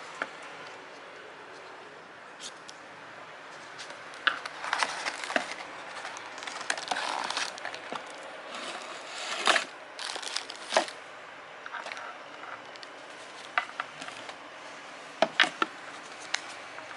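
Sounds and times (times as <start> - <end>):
packaging crinkling: 3.8 - 8.8, 9.4 - 11.0.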